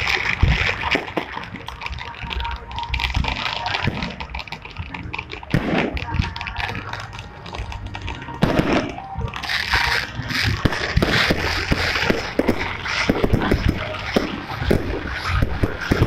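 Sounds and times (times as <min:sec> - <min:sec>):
crowd voices: 0:00.0 - 0:16.0
fireworks crackling and popping: 0:00.0 - 0:16.0.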